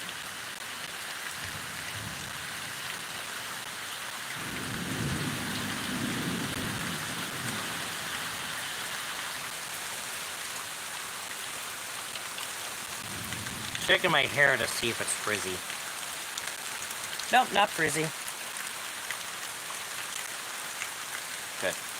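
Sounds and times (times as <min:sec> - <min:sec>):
steady rain falling: 0:00.0 - 0:21.9
low roll of thunder: 0:04.4 - 0:08.0, 0:13.0 - 0:14.0.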